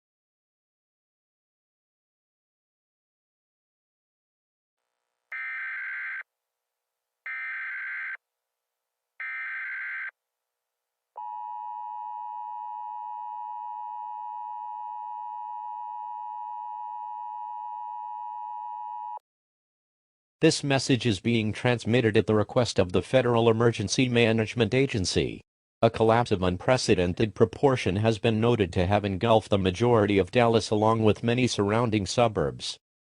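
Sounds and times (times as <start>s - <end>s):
two-tone alarm signal: 5.4s - 6.2s, 7.3s - 8.2s, 9.2s - 10.1s, 11.2s - 19.2s.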